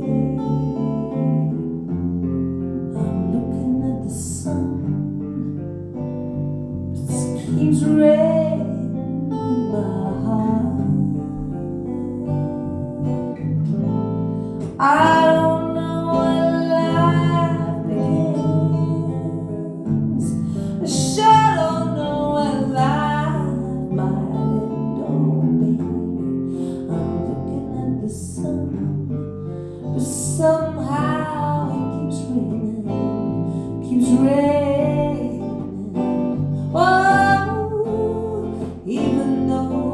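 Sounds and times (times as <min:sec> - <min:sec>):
slow acoustic guitar ballad: 0:00.0 - 0:39.9
person singing: 0:07.0 - 0:13.8, 0:14.5 - 0:29.2, 0:29.9 - 0:39.9.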